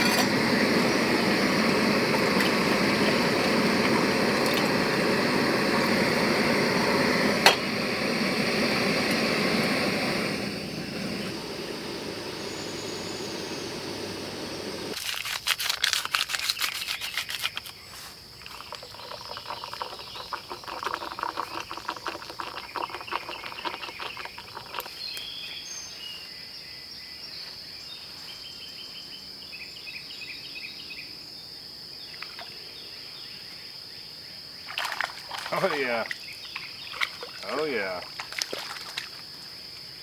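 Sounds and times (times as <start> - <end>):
steady low hum: 0.0 - 15.0
high-pitched insect drone: 10.4 - 15.0
bird chirps: 12.1 - 14.8.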